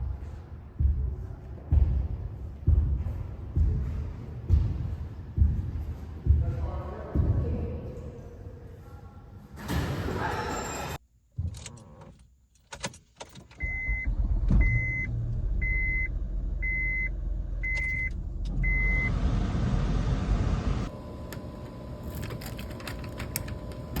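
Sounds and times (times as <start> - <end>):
car engine rumbling: 13.5 - 24.0.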